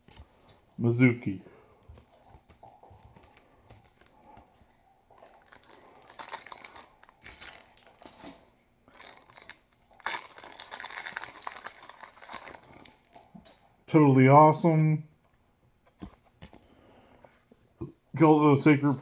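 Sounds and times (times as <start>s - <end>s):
wrapper crinkling and tearing: 5.2s - 13.4s.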